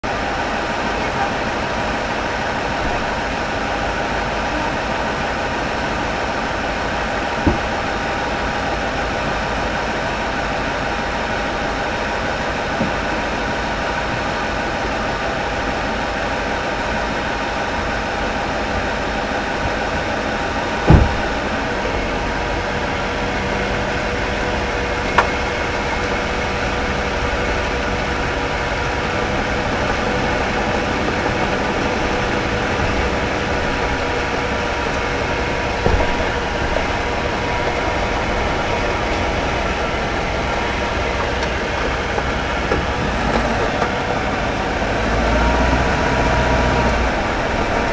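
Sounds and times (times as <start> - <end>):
front axle grinding: 0.0 - 47.9
sharp knocks: 7.4 - 8.0, 20.8 - 21.4, 29.7 - 43.9.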